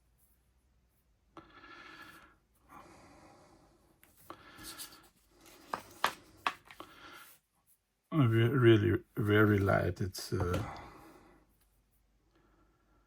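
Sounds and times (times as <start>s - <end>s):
hands rubbing packaging: 4.5s - 6.9s.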